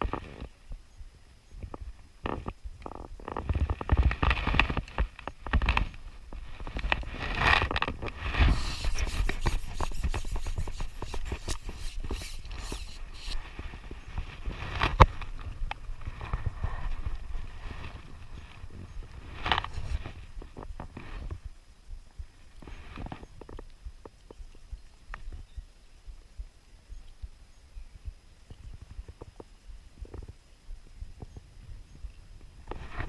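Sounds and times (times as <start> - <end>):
scrapes rustles and knocks: 2.2 - 21.5, 32.6 - 33.0.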